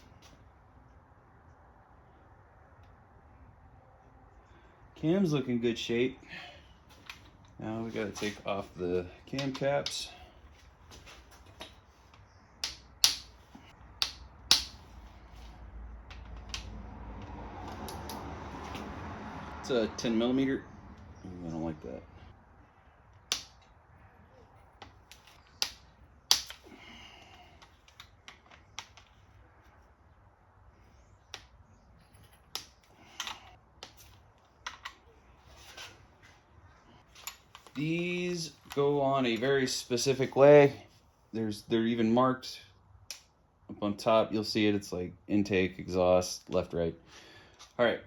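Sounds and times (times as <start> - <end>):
low shuffling noise: 6.9 - 9.1, 10.4 - 12.1
hand tools clicking and tapping: 11.5 - 13.4, 14.0 - 14.8, 24.8 - 26.7.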